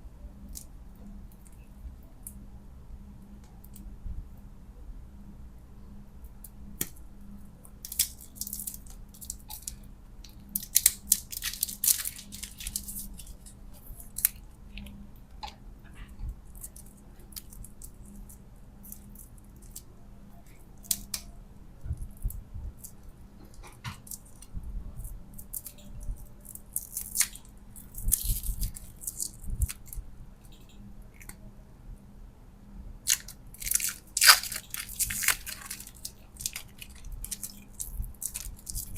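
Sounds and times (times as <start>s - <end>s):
faint steady hum: 0.0s - 38.9s
plastic packaging crinkling: 10.4s - 14.9s, 25.4s - 30.0s, 33.1s - 38.9s.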